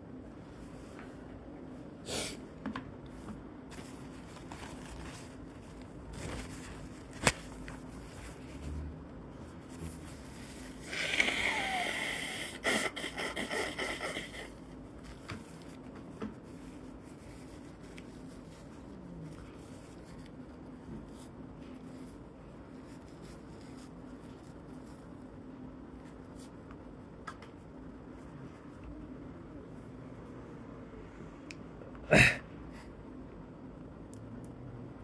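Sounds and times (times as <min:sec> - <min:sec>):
person sniffling: 0:02.0 - 0:02.4, 0:10.8 - 0:14.6.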